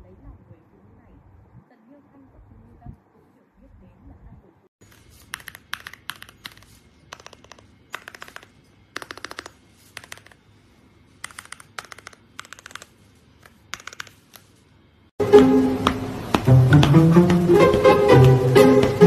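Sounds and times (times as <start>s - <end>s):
mechanical keyboard typing: 5.2s - 10.4s, 11.2s - 14.2s.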